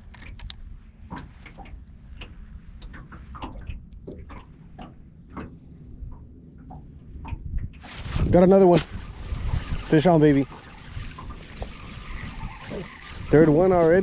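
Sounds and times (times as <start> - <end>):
light clicks and knocks: 0.1 - 7.8.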